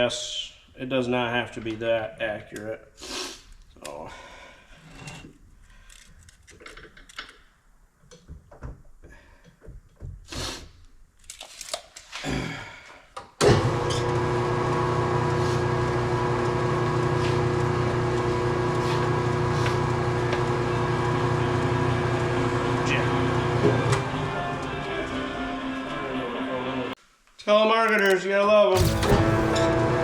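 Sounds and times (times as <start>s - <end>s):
clicks and knocks of tools: 5.9s - 8.6s, 27.9s - 28.2s
machine humming: 28.8s - 30.0s.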